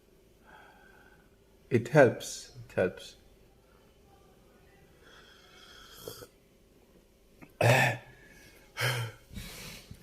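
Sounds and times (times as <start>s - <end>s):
man coughing: 7.6s - 8.1s.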